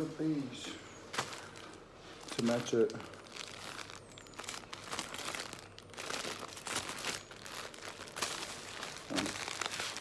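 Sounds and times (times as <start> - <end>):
packaging crinkling: 1.1 - 10.0.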